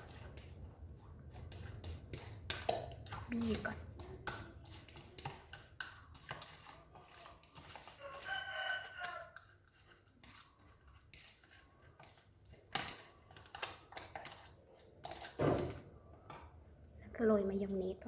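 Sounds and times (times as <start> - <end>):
rooster crowing: 8.0 - 9.4.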